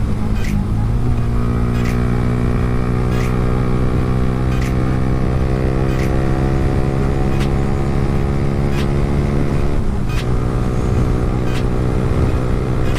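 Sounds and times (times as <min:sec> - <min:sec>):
motorcycle engine running: 0:00.0 - 0:12.9
sharp ticks: 0:04.5 - 0:04.8, 0:05.9 - 0:06.2.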